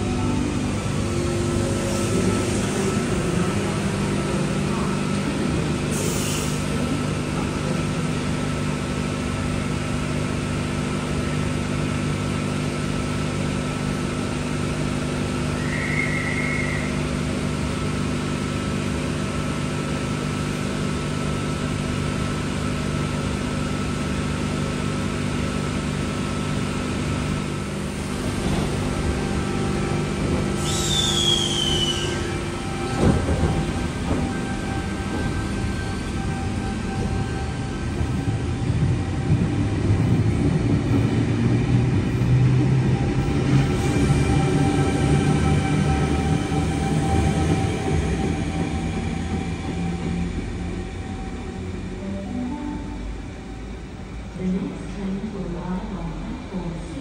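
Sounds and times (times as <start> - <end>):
electric train humming: 0.0 - 57.0
short falling squeal: 15.6 - 17.0, 30.6 - 32.4.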